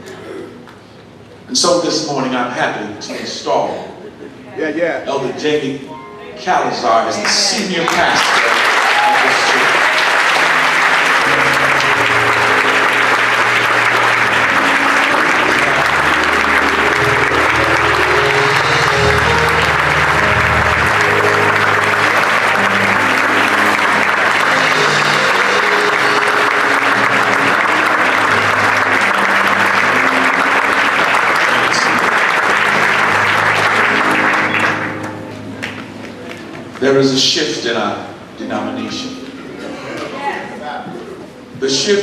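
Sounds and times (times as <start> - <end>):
congregation applauding: 6.8 - 37.2.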